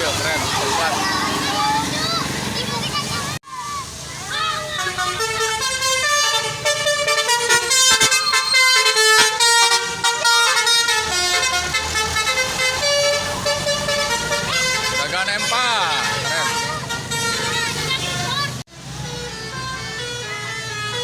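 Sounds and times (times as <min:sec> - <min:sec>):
multi-tone musical bus horn: 0:04.7 - 0:21.0.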